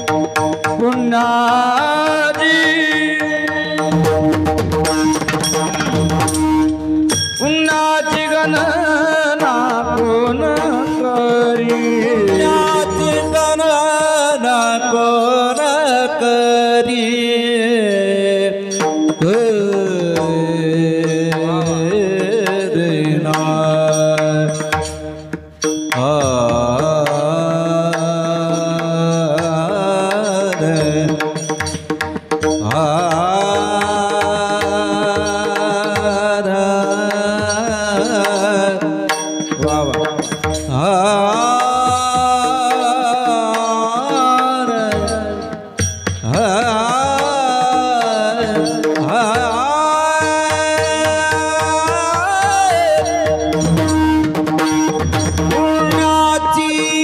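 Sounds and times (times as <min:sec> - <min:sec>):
drum strokes: 0:00.0 - 0:14.8, 0:18.7 - 0:57.0.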